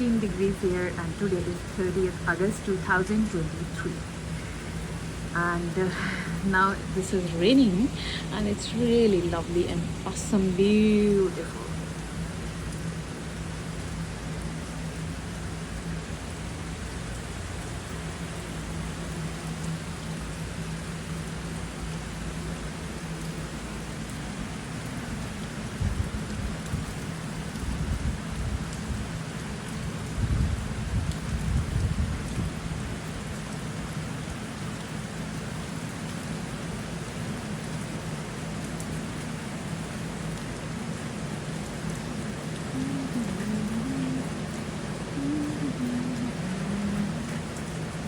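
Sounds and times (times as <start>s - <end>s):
rain pattering: 0.0s - 48.0s
faint low hum: 41.9s - 47.7s.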